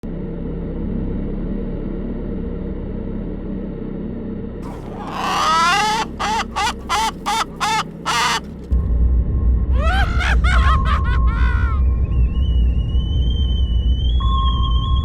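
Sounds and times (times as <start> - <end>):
bird squawking: 4.6 - 8.7, 9.8 - 10.8.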